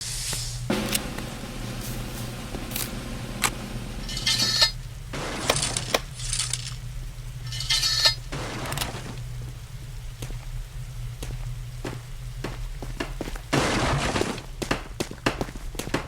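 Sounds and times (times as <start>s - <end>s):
steady low hum: 0.0s - 16.0s
metallic clinking and rattling: 4.0s - 6.8s, 7.5s - 9.0s.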